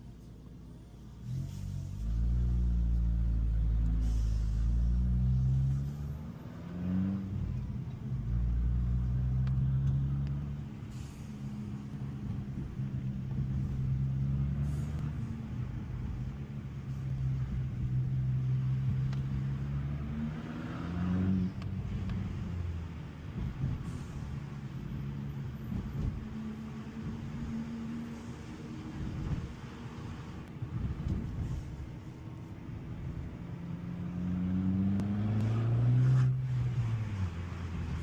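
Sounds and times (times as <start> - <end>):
car engine running and revving: 0.0 - 38.0.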